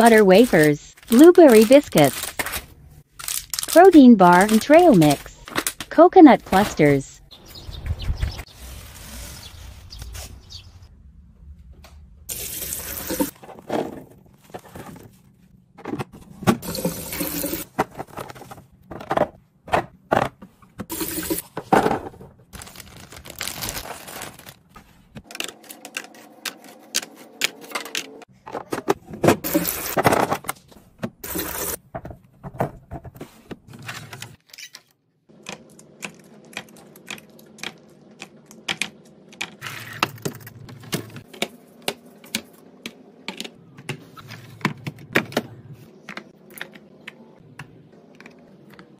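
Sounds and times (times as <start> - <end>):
snack packages rustling: 0.5 - 5.8, 22.5 - 27.0.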